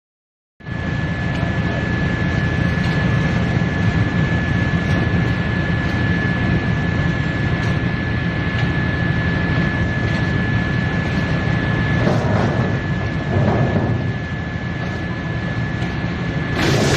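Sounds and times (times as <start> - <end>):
wood chipper running: 16.4 - 16.9.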